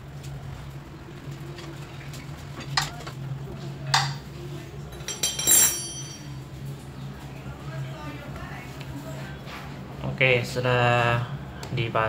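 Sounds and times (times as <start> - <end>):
metal tools clinking and knocking: 4.9 - 6.4
ringing metallic clink: 5.0 - 6.4.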